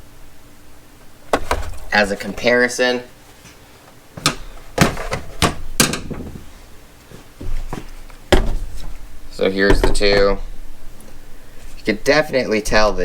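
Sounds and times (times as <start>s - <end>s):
power tools set down on hard surface: 4.2s - 6.5s.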